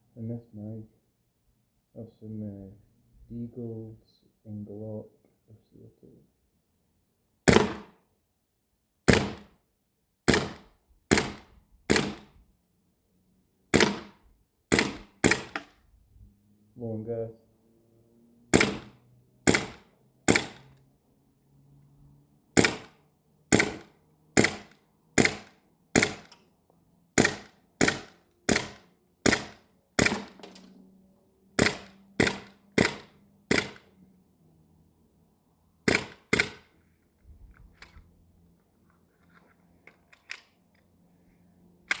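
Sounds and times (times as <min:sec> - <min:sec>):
airsoft pistol shots: 0:07.5 - 0:08.0, 0:09.1 - 0:09.5, 0:10.3 - 0:12.3, 0:13.7 - 0:15.7, 0:18.5 - 0:20.6, 0:22.6 - 0:26.3, 0:27.2 - 0:30.4, 0:31.6 - 0:33.9, 0:35.9 - 0:36.7
small clicks: 0:38.8 - 0:41.0.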